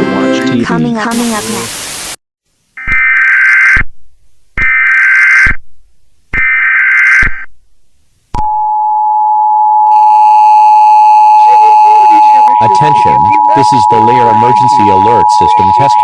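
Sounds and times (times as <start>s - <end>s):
higher tones: 8.4s - 16.0s
two-tone attention signal: 8.4s - 16.0s
digital data tone bursts: 11.4s - 16.0s.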